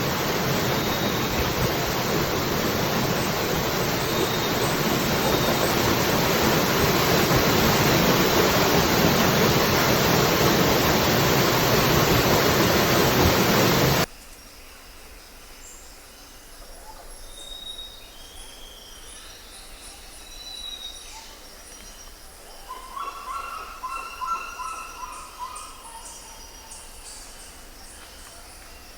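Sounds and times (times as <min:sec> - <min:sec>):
birds whistling and chirping: 0:00.0 - 0:08.1
waterfall rushing: 0:00.0 - 0:14.1.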